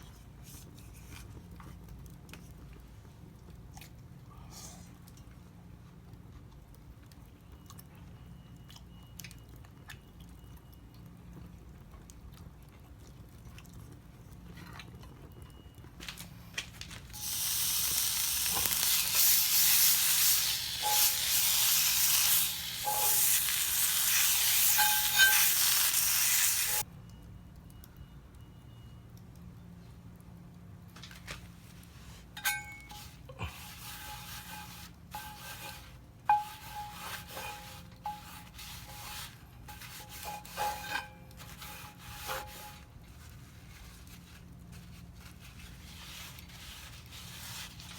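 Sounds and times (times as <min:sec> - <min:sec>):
batter sizzling in a hot pan: 0:17.1 - 0:26.9.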